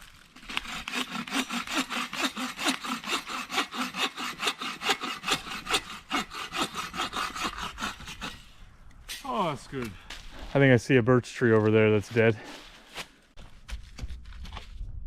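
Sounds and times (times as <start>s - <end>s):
hand saw cutting wood: 0.4s - 8.6s.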